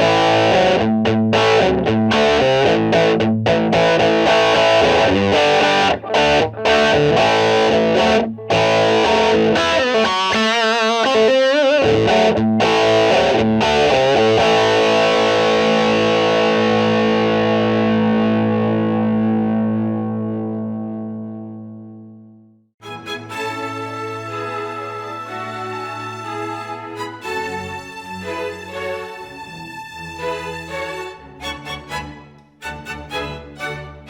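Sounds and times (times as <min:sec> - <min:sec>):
distorted electric guitar chords: 0:00.0 - 0:22.5.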